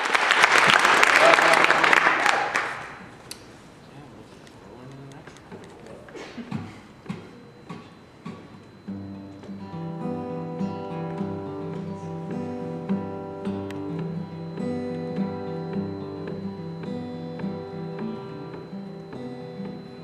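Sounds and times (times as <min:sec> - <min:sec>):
acoustic guitar playing chords: 0:06.2 - 0:20.0.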